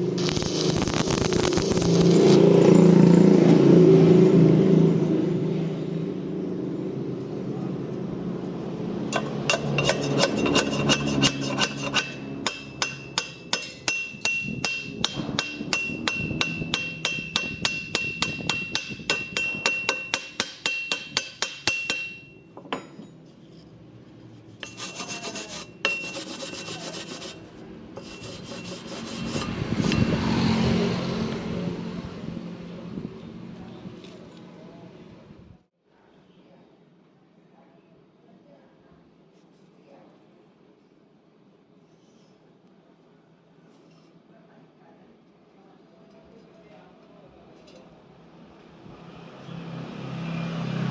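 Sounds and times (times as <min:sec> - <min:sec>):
hand tool scraping steel: 0:00.2 - 0:02.7, 0:09.1 - 0:22.2, 0:24.4 - 0:30.1
steady metallic ring: 0:09.1 - 0:23.2, 0:24.6 - 0:27.4.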